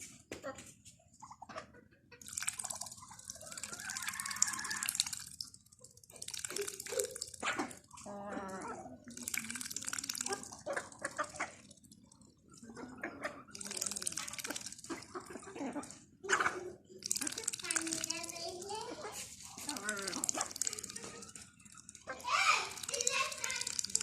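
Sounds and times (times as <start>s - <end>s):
water splashing and dripping: 2.2s - 24.0s.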